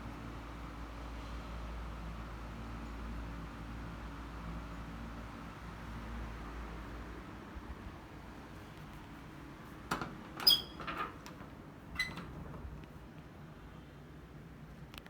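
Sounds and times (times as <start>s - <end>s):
air conditioner humming: 4.2s - 14.8s.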